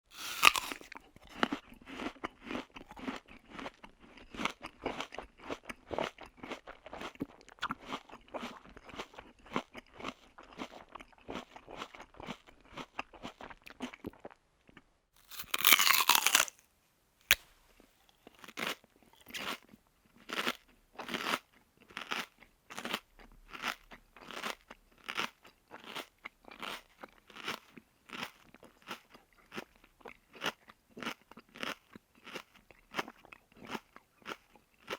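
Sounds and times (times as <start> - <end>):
crunchy chewing of food: 0.1 - 16.6, 17.3 - 34.9.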